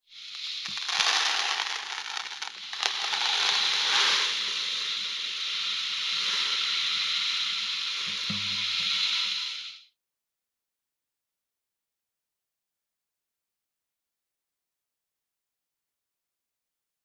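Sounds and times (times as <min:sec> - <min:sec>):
crackling hiss: 0:00.0 - 0:09.9.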